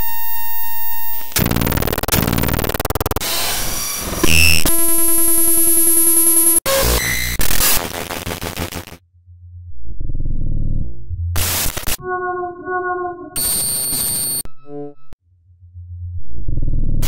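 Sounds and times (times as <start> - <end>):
electronic buzzing and pulsing: 0.0 - 9.0
pulsing electronic drone: 11.2 - 15.2.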